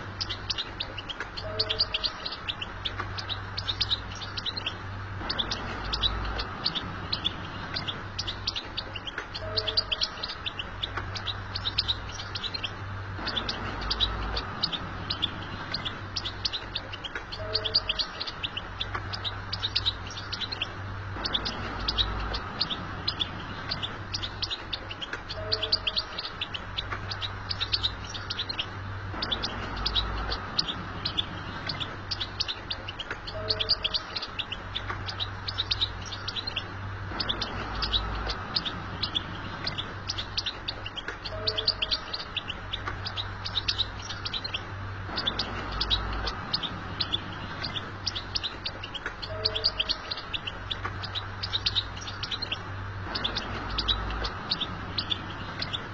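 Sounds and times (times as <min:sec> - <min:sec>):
goldfinch twittering: 0:00.0 - 0:55.9
steady low hum: 0:00.0 - 0:55.9.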